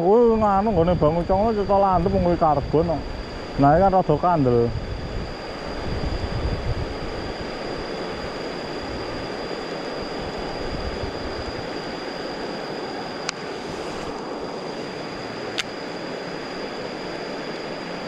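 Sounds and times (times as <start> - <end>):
steady rushing noise: 0.0 - 18.0
thin high steady tone: 0.0 - 18.0
sharp click: 15.5 - 15.8.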